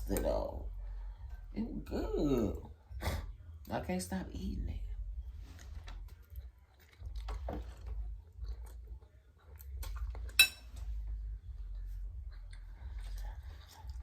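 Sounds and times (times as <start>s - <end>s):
chewing food: 5.2s - 14.0s.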